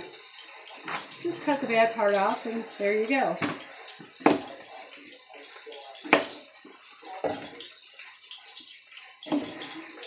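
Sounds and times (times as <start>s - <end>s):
knife chopping on cutting board: 4.2s - 4.7s, 6.1s - 6.5s, 9.3s - 9.6s.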